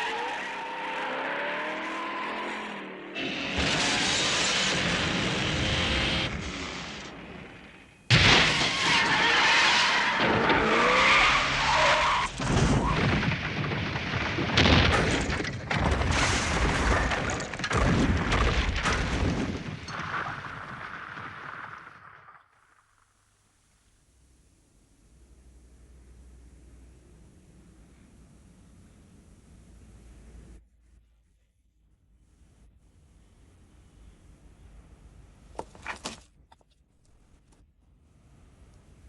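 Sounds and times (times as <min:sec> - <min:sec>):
vehicle engines: 0:00.0 - 0:08.1
loud crash hits: 0:08.1 - 0:09.2, 0:12.2 - 0:22.0
tyres screeching skids: 0:08.4 - 0:13.1.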